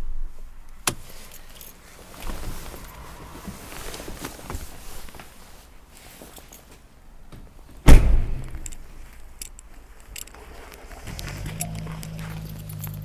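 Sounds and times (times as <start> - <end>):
loud slam: 7.9 - 8.6.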